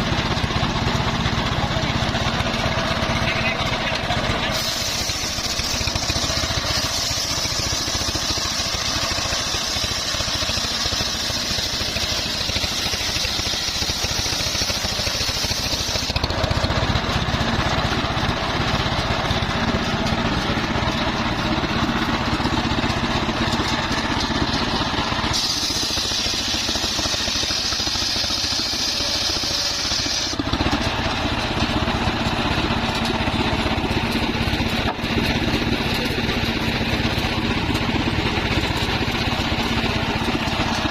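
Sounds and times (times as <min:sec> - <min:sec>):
circular saw cutting log: 0:00.0 - 0:40.9
engine running: 0:00.0 - 0:40.9.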